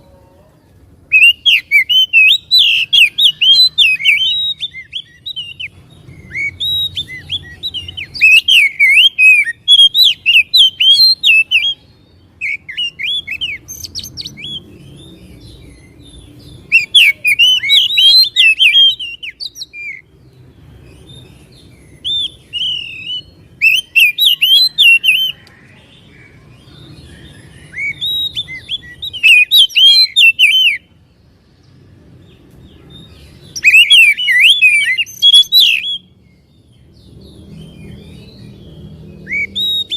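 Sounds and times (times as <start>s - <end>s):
bird singing whistled phrases: 1.1s - 11.8s, 12.4s - 15.0s, 16.7s - 20.0s, 21.8s - 25.4s, 27.1s - 30.9s, 33.4s - 36.1s, 39.2s - 39.9s.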